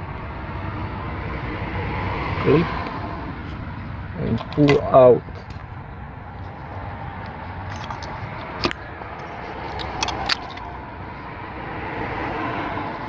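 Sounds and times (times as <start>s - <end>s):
low background hum: 0.0s - 12.2s
connector clip clicking: 4.3s - 5.8s.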